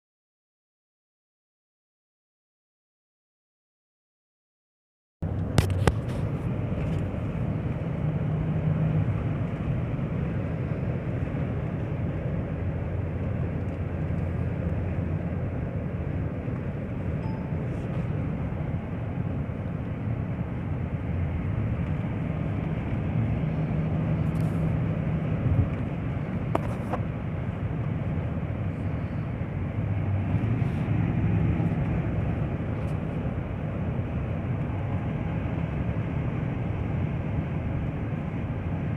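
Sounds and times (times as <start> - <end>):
car engine and road rumble: 5.2 - 38.9.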